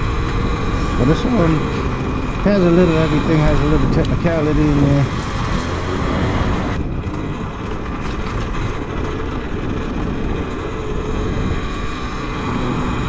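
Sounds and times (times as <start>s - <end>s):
faint steady whine: 0.0s - 6.8s
tire rolling on ground: 0.0s - 13.0s
wind on microphone: 0.0s - 13.0s.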